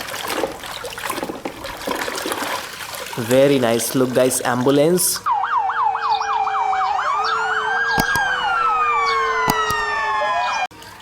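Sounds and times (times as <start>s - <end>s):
toy siren: 5.3s - 10.7s
sharp clicks: 7.9s - 8.3s.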